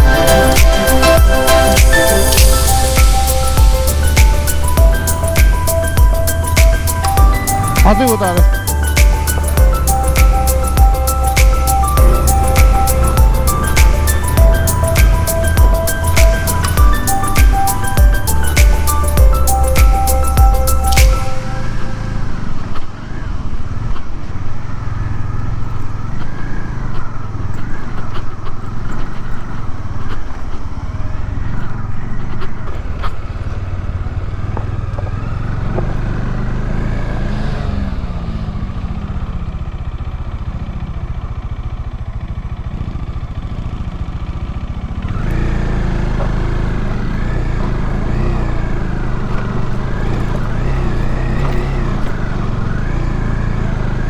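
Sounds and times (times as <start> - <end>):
motorcycle engine running: 33.3 - 54.0.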